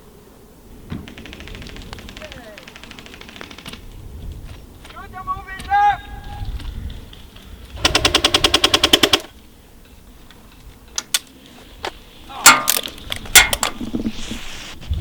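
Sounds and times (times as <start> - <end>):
airsoft gun rapid firing: 1.0 - 3.9, 7.7 - 9.4.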